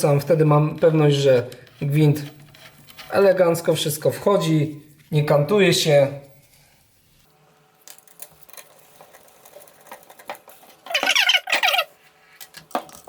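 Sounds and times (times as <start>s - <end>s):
short loud squeaks: 10.9s - 11.9s.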